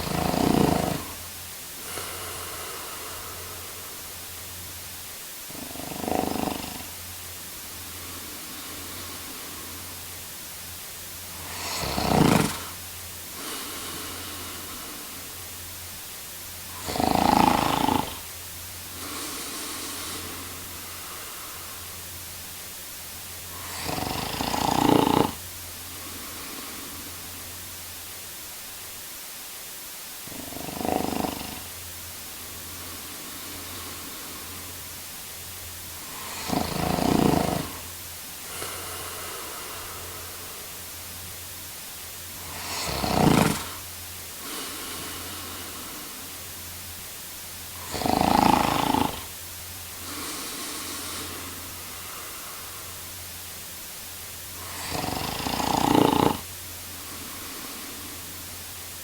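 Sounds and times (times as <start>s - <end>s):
man snoring: 0.0s - 4.4s, 5.5s - 10.2s, 11.2s - 15.5s, 16.7s - 22.0s, 23.5s - 27.6s, 30.2s - 31.8s, 32.4s - 35.0s, 35.9s - 40.9s, 42.3s - 46.4s, 47.7s - 49.4s, 50.0s - 53.1s, 54.5s - 58.5s
soft breaths: 0.0s - 59.0s
steady background hiss: 0.0s - 59.0s.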